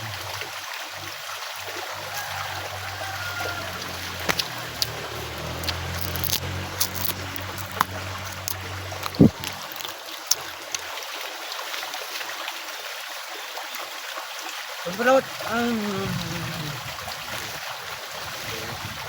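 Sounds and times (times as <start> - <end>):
low hum: 0.0 - 10.7
stream water running: 0.0 - 19.0.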